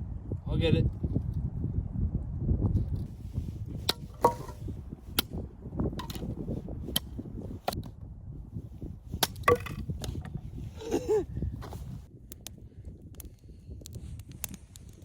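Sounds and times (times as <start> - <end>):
firewood cracking and knocking: 3.8 - 8.0, 9.1 - 10.5.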